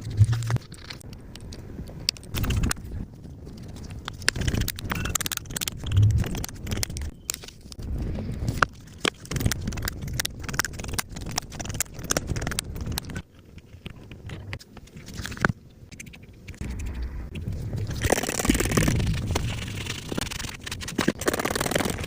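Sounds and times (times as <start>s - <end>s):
smartphone parts clicking and scraping: 0.0s - 7.8s, 8.4s - 21.2s.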